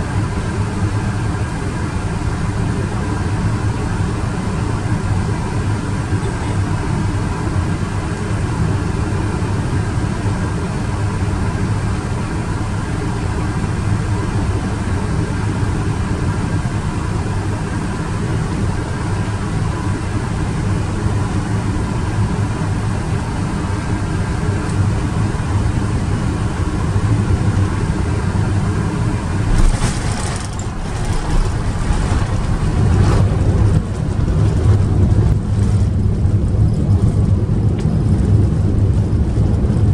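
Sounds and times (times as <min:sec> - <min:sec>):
airliner low rumble: 0:00.0 - 0:39.9
clatter and knocks: 0:29.4 - 0:35.9.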